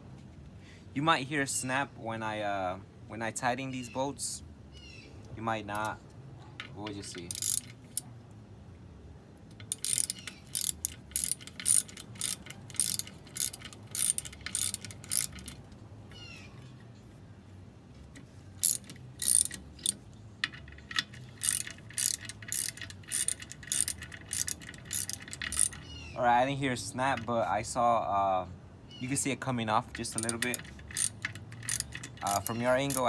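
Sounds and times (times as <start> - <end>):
ratchet wrench clicking: 6.6 - 8.1, 9.5 - 15.7, 18.6 - 25.9, 29.8 - 33.0.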